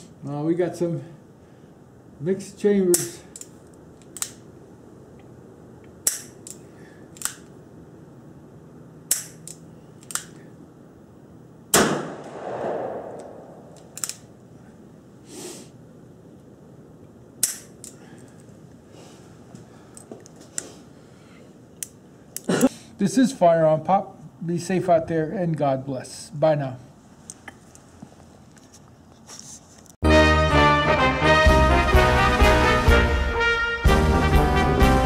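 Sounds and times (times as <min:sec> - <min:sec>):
quieter sharp cracks: 0:11.7 - 0:14.5
revolver shot ringing: 0:11.8 - 0:14.0.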